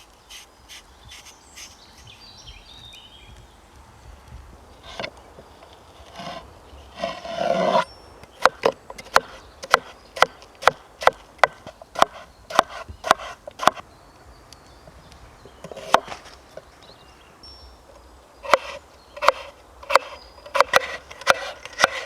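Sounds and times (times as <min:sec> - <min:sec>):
knife cutting on wooden board: 0:07.0 - 0:07.8, 0:18.5 - 0:22.0.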